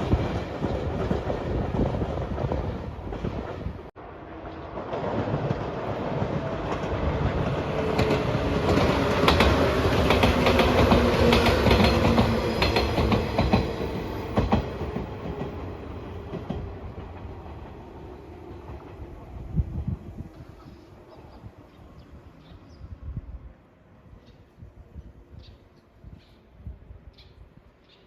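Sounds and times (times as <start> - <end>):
train wheels clacking over rail joints: 4.8 - 17.6.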